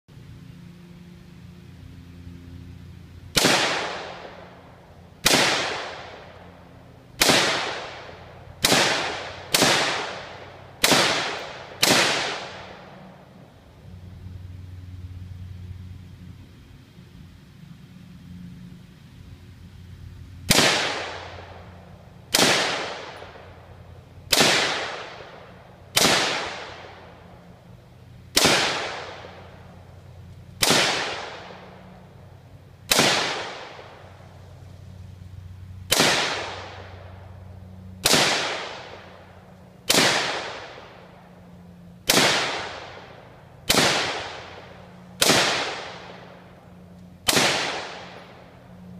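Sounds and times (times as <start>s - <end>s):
rifle shots echoing: 3.3s - 4.6s, 5.2s - 6.6s, 7.2s - 13.1s, 20.5s - 27.4s, 28.3s - 29.8s, 30.6s - 32.0s, 32.9s - 34.1s, 35.9s - 37.3s, 38.0s - 41.3s, 42.0s - 48.9s.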